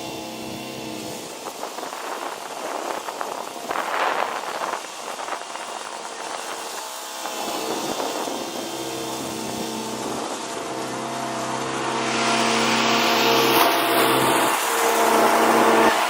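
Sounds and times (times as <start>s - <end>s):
ride-on mower engine running: 0.0s - 16.0s.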